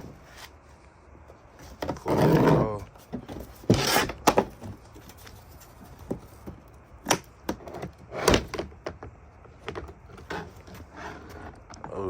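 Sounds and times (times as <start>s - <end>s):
plastic panel knocking and clunking: 6.0s - 10.5s.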